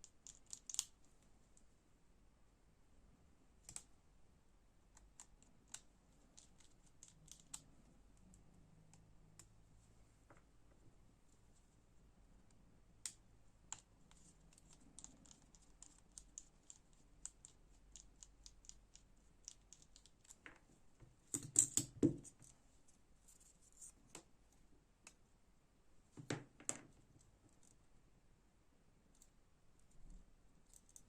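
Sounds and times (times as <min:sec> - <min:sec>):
small metal clicks and scratches: 0:00.0 - 0:01.0, 0:05.0 - 0:09.5, 0:13.0 - 0:20.7, 0:30.6 - 0:31.0.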